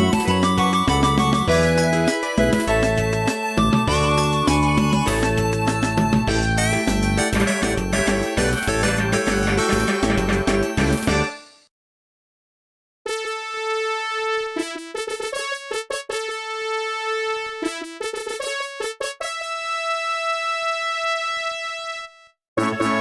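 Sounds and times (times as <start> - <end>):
phone ringtone melody: 0.0 - 11.3.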